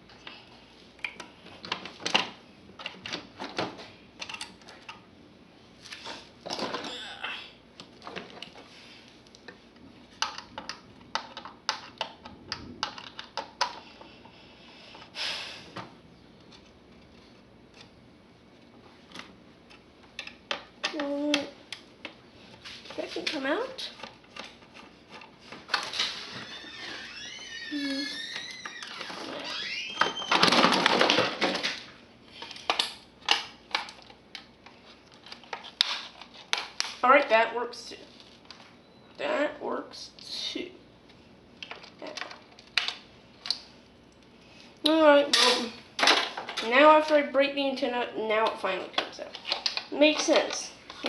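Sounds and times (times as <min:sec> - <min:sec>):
sharp clicks and clatter of parts: 0:01.0 - 0:05.0, 0:45.3 - 0:46.7.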